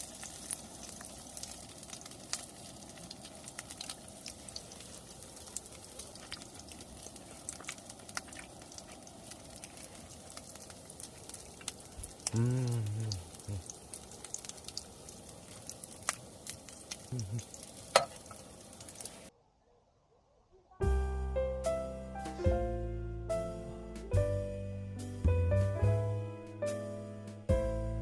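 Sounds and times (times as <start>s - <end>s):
food sizzling in a frying pan: 0.0s - 19.3s
man humming: 12.2s - 13.7s, 17.1s - 17.5s.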